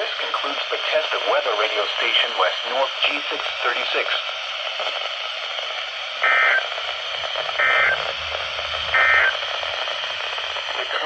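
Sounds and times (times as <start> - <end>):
radio static hiss: 0.0 - 11.0
digital data buzzing bursts: 6.2 - 6.7, 7.4 - 9.6.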